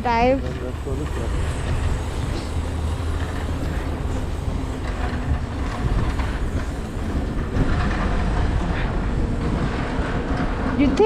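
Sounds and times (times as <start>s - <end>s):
wind buffeting a microphone: 0.0s - 11.0s.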